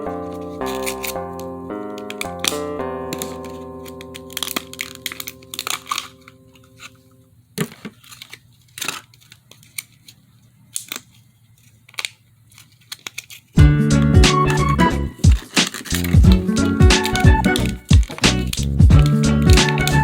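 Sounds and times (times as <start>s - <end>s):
background music chord: 0.0s - 7.2s, 13.6s - 15.4s, 16.1s - 20.0s
packaging tearing and crinkling: 7.6s - 13.6s, 15.4s - 16.2s.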